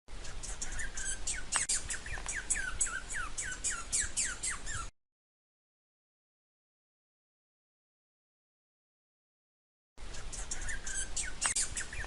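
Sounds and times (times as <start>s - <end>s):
squirrel chirping: 0.1s - 4.9s, 10.0s - 12.0s.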